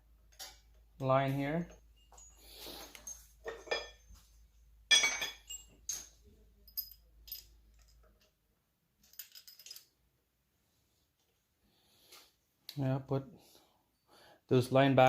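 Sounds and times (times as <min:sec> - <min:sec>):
metal engine parts clinking: 0:01.5 - 0:04.2, 0:04.9 - 0:08.2, 0:09.0 - 0:09.9.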